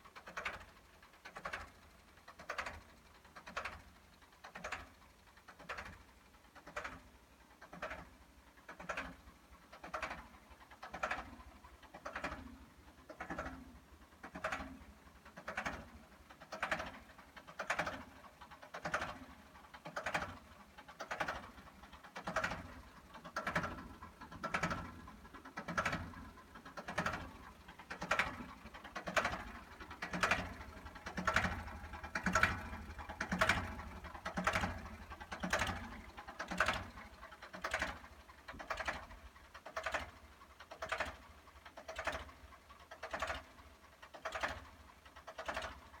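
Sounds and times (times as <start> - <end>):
tractor engine idling: 0.0 - 46.0.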